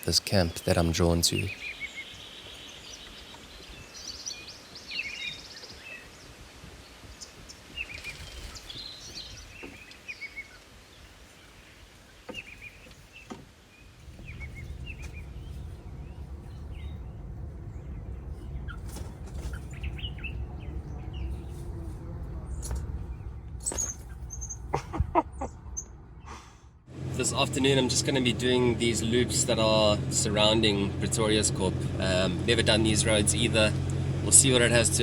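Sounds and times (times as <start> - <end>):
small birds chirping: 0.0 - 35.0
low steady rumble: 13.7 - 35.0.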